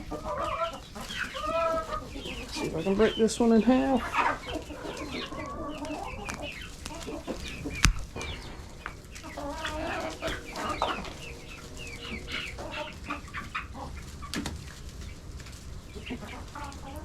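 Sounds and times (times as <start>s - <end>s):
chicks peeping: 0.0s - 17.0s
hens clucking: 0.0s - 17.0s
sharp crack: 4.2s - 15.7s.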